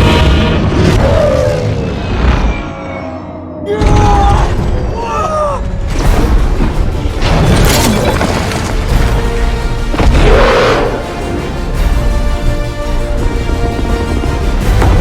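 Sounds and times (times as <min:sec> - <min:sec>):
dramatic orchestral score: 0:00.0 - 0:15.0
crashing shattering destruction: 0:07.2 - 0:09.4.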